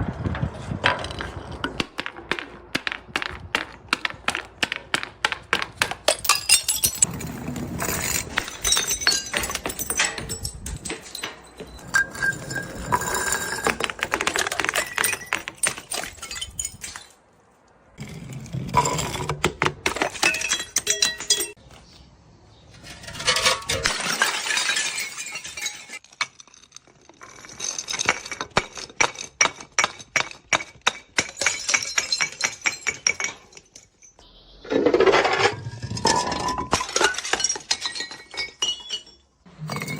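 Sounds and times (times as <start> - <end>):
glass bottles breaking: 6.1 - 17.2, 19.9 - 21.6, 23.1 - 34.2, 34.9 - 39.9.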